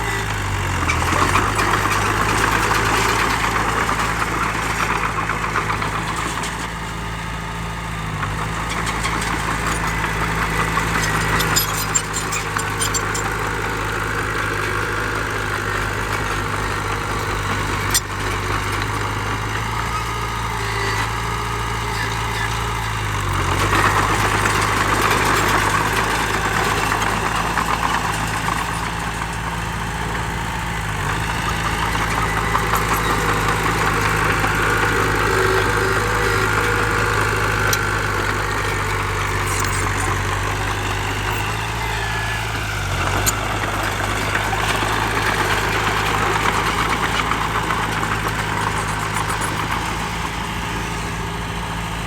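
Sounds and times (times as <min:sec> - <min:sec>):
diesel engine running: 0:00.0 - 0:52.0.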